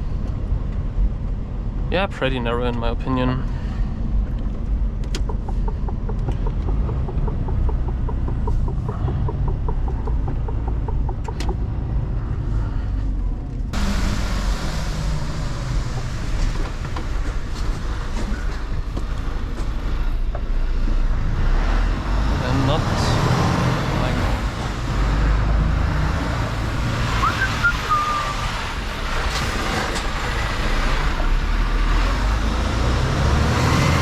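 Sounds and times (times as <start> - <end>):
truck engine rumble: 0.0 - 34.0
regular ticking: 4.1 - 12.4
road and tyre noise hiss: 13.8 - 20.7, 22.4 - 34.0.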